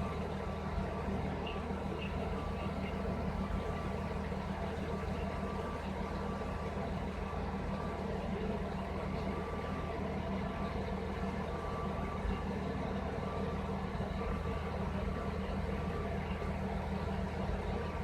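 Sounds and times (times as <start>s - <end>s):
radiator cooling fans running: 1.9s - 5.8s.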